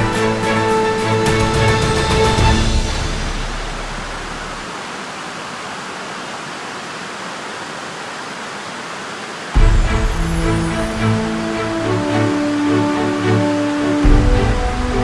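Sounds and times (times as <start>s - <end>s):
background music: 0.0s - 4.6s, 9.6s - 15.0s
artificial waterfall rushing: 0.0s - 15.0s.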